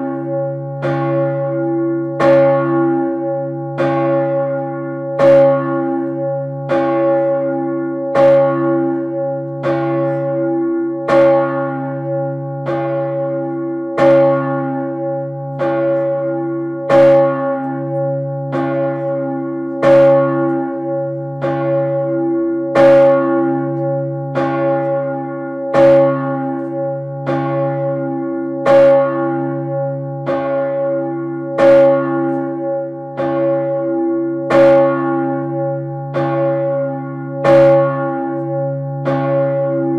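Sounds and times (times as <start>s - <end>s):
church bell ringing: 0.0s - 39.9s.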